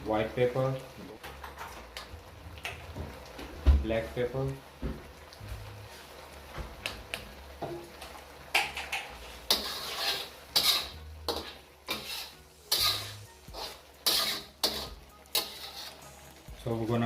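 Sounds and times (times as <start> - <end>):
spoon scraping a pan: 8.5 - 16.4.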